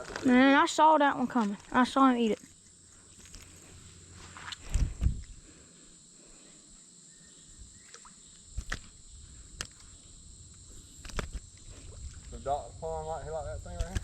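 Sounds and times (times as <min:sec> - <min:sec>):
crickets droning: 0:00.0 - 0:14.0
sharp clicks: 0:13.7 - 0:14.0.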